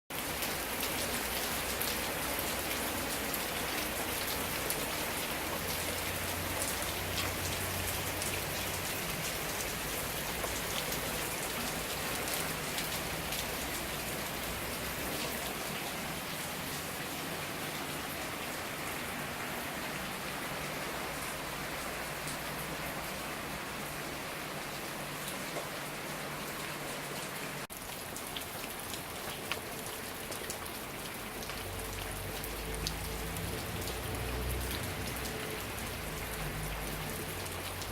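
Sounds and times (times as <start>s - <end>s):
heavy rain pattering: 0.1s - 37.9s.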